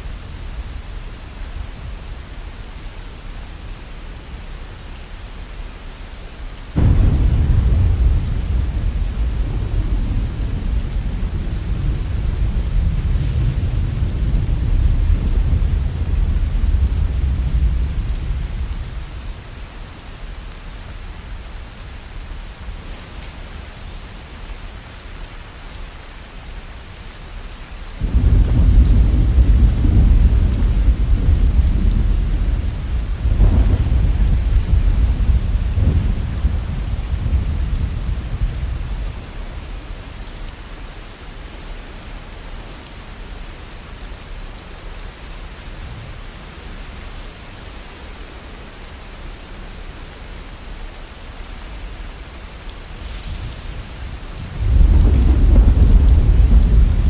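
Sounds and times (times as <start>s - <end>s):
heavy rain falling: 0.0s - 57.0s
thunder rumbling: 6.8s - 19.5s, 28.0s - 40.2s, 52.8s - 57.0s.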